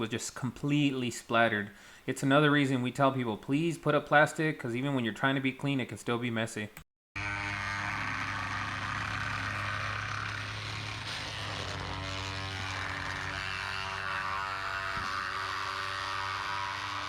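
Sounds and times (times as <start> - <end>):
engine running steadily: 7.5 - 17.0.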